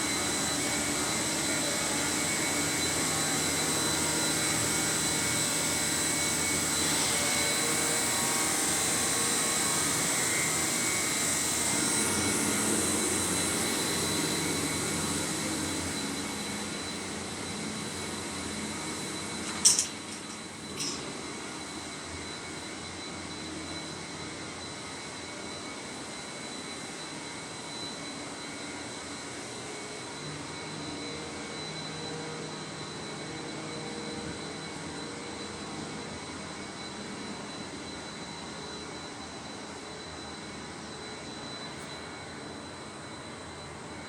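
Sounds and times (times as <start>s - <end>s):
industrial machinery roar: 0.0s - 21.8s
thin high whine: 0.0s - 24.0s.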